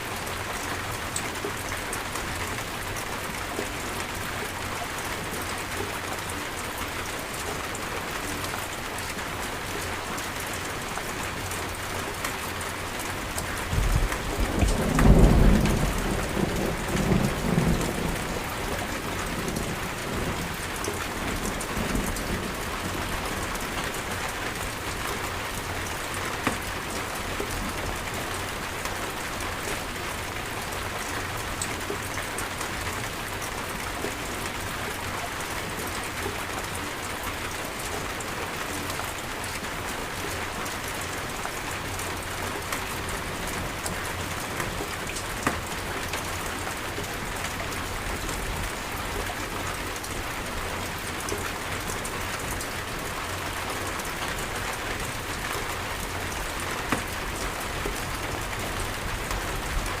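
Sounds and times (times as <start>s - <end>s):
heavy rain patter: 0.0s - 60.0s.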